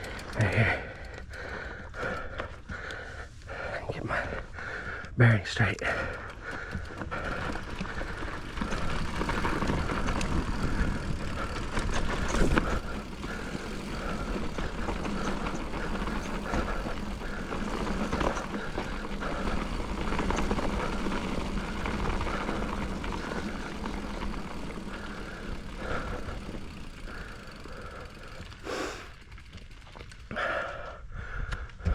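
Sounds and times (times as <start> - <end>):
bike on loose dirt: 0.0 - 31.9
wind rumble: 6.1 - 28.7.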